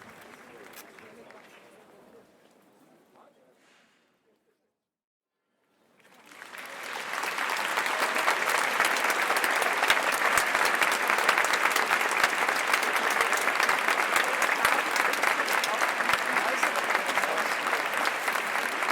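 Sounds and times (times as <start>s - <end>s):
crowd applauding: 0.0s - 1.7s, 6.0s - 18.9s.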